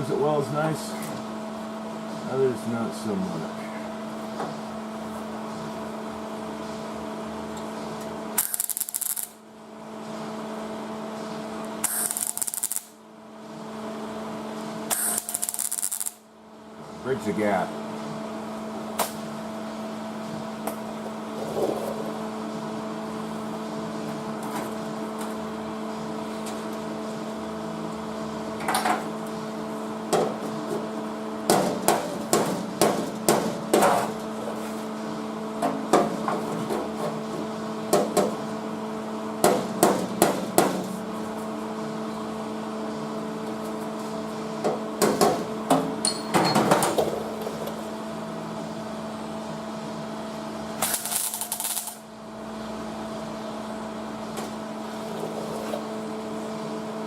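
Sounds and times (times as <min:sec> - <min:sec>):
steady electrical hum: 0:00.0 - 0:57.0
welding crackle: 0:08.4 - 0:09.4, 0:11.8 - 0:13.0, 0:14.9 - 0:16.2, 0:50.8 - 0:52.1.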